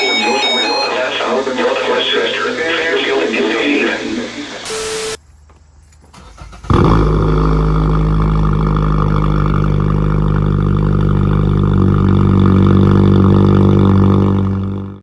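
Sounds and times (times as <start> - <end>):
loud low buzzing drone: 6.6 - 15.0.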